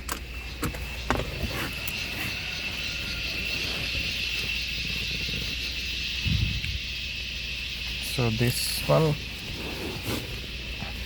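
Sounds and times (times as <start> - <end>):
steady high hiss: 2.4 - 11.0.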